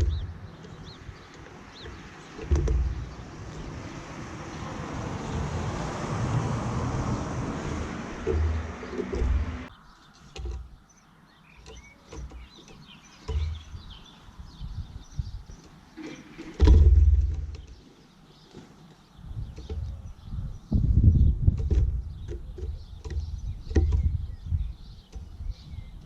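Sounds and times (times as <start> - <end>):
loud low rumbling thumps: 0.0 - 0.6, 2.5 - 4.0.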